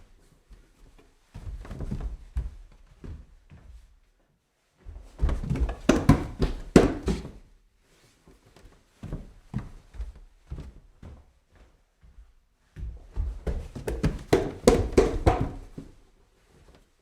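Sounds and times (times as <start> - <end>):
footsteps climbing stairs: 4.9 - 7.4, 9.0 - 16.0.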